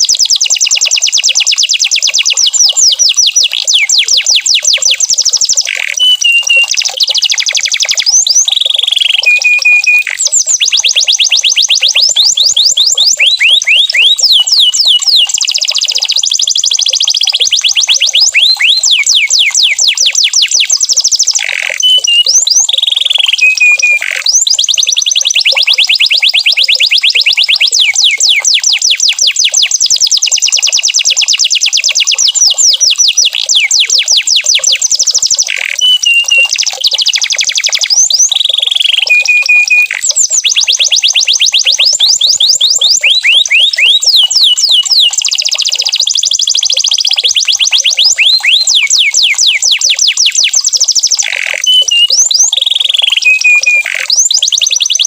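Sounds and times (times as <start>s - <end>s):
canary singing trills: 0.0s - 55.0s.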